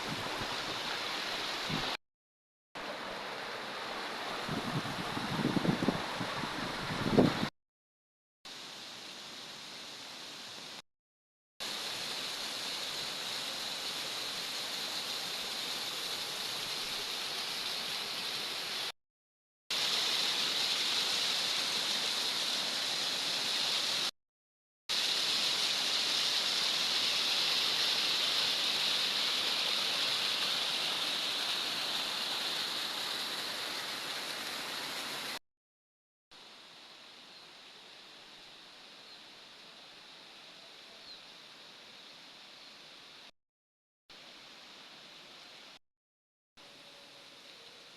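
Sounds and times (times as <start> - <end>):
waterfall rushing: 24.9 - 35.4.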